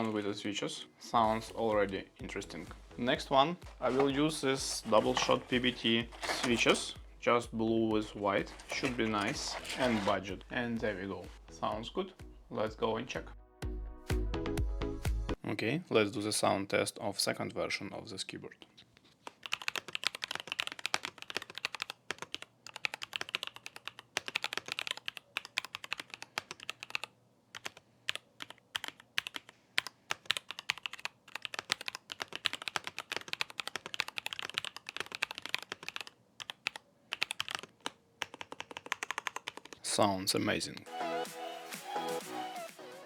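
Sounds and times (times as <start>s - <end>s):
mechanical keyboard typing: 3.8s - 7.0s, 8.4s - 10.4s, 19.2s - 39.8s.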